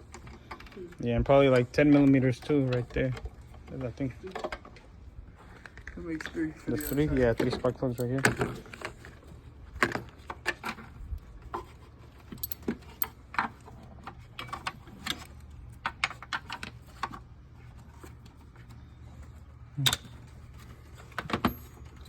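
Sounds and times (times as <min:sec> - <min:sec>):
metallic tool clicks and clinks: 0:06.7 - 0:08.3, 0:12.4 - 0:13.1.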